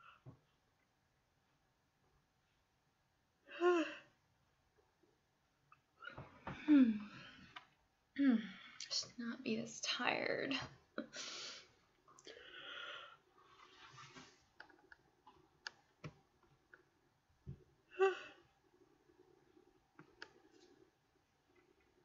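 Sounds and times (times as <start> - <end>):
woman sighing: 6.5 - 7.4, 8.2 - 8.7.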